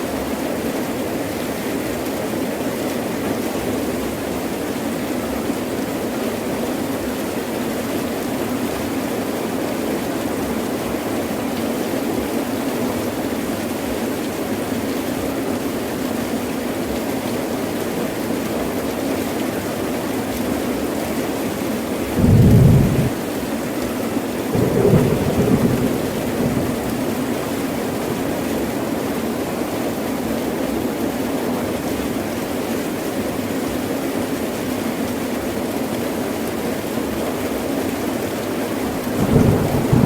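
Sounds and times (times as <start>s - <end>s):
heavy rain: 0.0s - 40.0s
thunder rumble: 22.2s - 23.2s, 24.6s - 28.1s, 39.1s - 40.0s.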